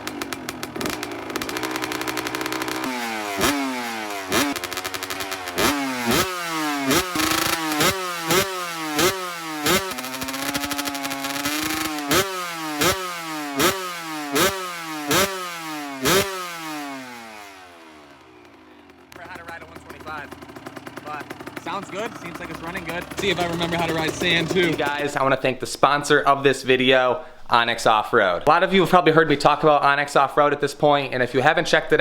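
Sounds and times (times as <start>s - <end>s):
dirt bike engine revving: 0.0s - 25.4s.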